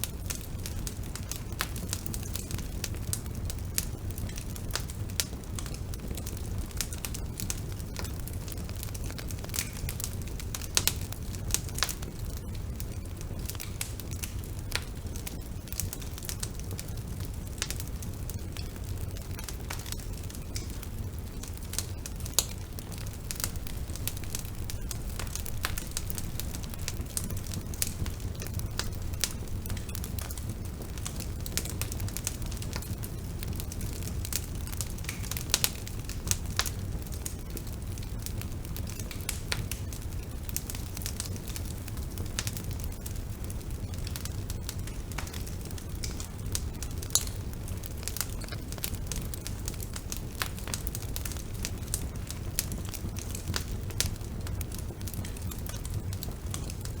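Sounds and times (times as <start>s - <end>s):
burning wood crackling and popping: 0.0s - 57.0s
rumble of flames: 0.0s - 57.0s.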